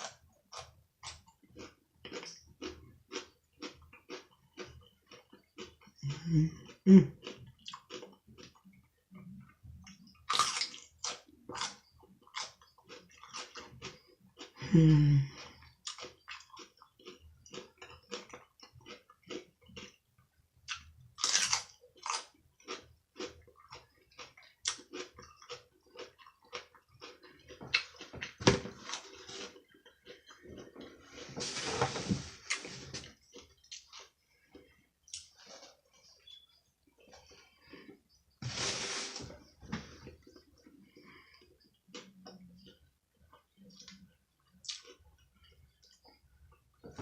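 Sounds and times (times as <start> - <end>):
person chewing and crunching food: 0.0 - 47.0
person humming: 6.0 - 7.2, 14.6 - 15.4.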